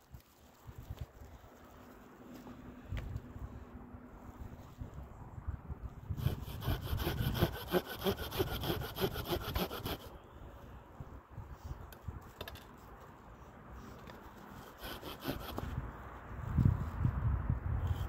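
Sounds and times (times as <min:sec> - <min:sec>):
hand saw cutting wood: 0:06.1 - 0:10.1, 0:14.5 - 0:15.8.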